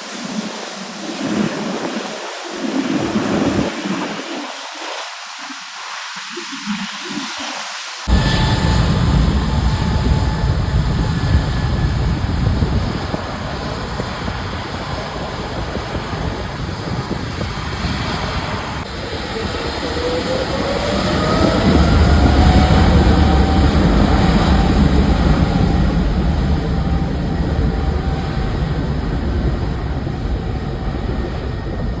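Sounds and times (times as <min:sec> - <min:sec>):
large machine rumbling past: 0:08.1 - 0:14.9
whine rising in pitch: 0:08.1 - 0:32.0.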